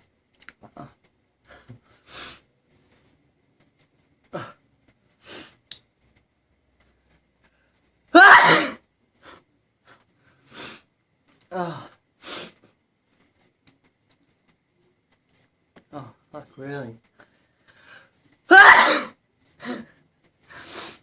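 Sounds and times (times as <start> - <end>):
man sneezing: 8.2 - 8.8, 18.5 - 19.8
quiet breathy sounds: 9.1 - 18.5.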